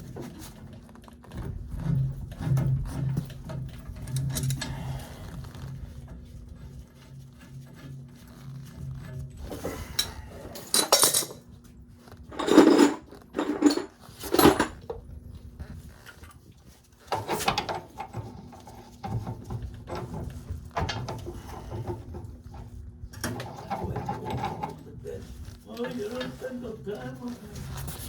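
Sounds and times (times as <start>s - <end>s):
metal objects clattering: 9.9s - 11.5s, 12.3s - 14.9s.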